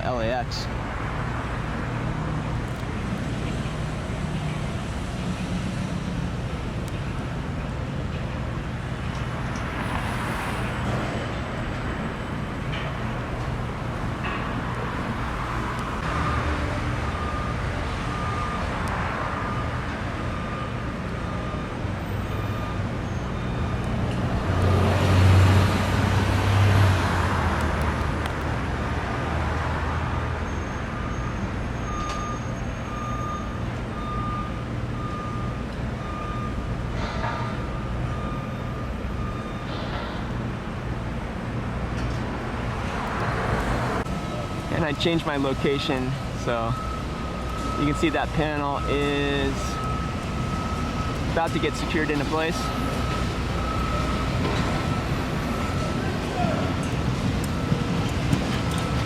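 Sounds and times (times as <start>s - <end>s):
construction machinery rumbling: 0.0s - 27.6s, 30.4s - 59.0s
backup alarm beeping: 12.0s - 23.9s, 30.5s - 36.7s, 44.3s - 59.0s.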